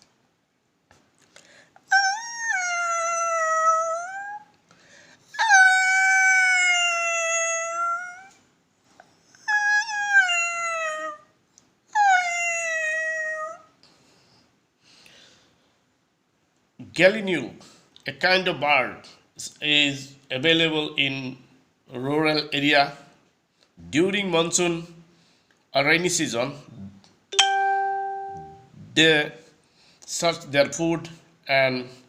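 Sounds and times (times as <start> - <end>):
man imitating dog whining: 1.9 - 4.5, 5.3 - 8.4, 9.4 - 11.2, 11.9 - 13.6.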